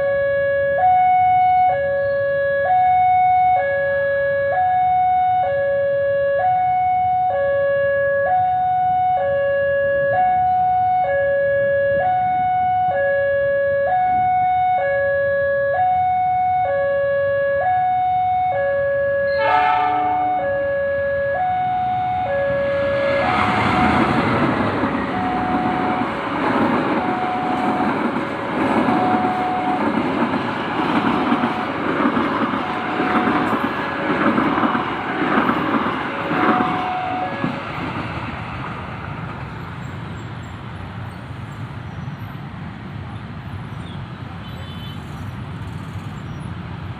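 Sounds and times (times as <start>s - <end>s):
horn blast: 19.3s - 20.7s, 21.3s - 26.2s, 32.6s - 33.9s, 36.2s - 37.6s
train wheels clattering: 23.3s - 38.8s
level-crossing alarm two-tone hoot: 25.0s - 26.1s, 27.0s - 27.9s, 36.4s - 37.5s.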